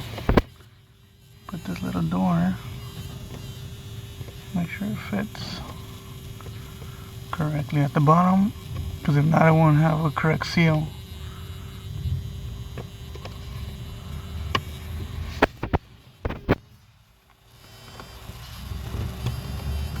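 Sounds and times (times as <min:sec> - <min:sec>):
faint steady hum: 0:00.0 - 0:20.0
plastic clicks and knocks: 0:00.2 - 0:00.6, 0:15.4 - 0:16.6.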